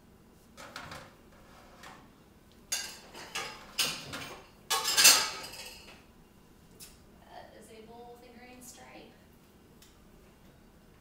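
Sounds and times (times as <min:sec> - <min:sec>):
dishes and cutlery clattering: 0:02.7 - 0:06.0.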